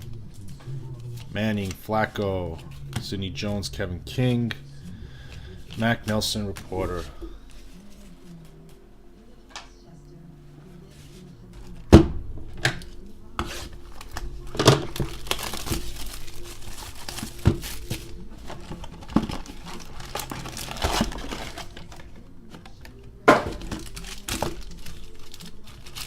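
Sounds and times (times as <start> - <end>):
plastic wrappers crinkling and tearing: 0.0 - 3.5, 12.8 - 26.0.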